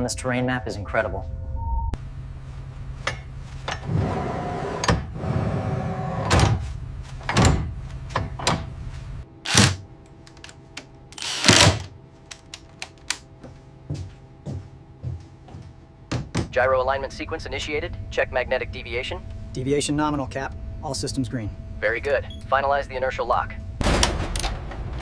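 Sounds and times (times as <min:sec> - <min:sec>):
knocks thuds and clanks: 0:09.5 - 0:09.8, 0:11.2 - 0:13.2, 0:23.8 - 0:25.0
sharp clicks: 0:09.5 - 0:10.6, 0:11.2 - 0:13.2.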